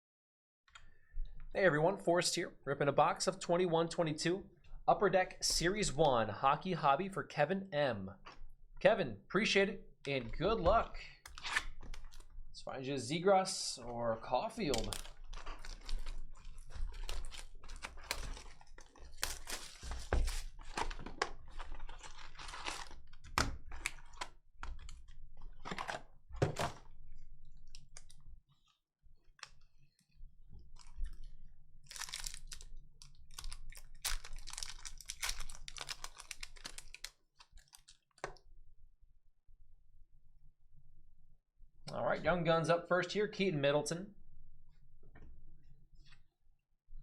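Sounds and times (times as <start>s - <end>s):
wrappers torn and crinkled: 11.3s - 12.3s, 14.6s - 25.9s, 30.7s - 38.1s.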